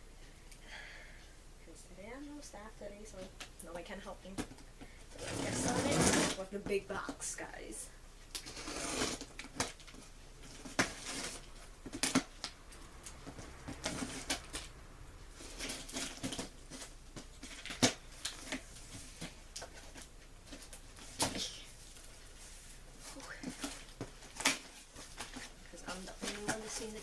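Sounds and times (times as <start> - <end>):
cardboard rustling: 5.1 - 7.2, 8.6 - 12.5, 13.2 - 27.0.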